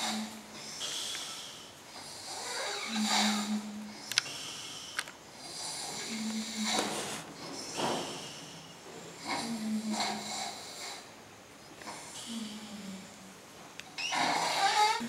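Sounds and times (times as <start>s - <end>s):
person snoring: 0.0s - 7.2s.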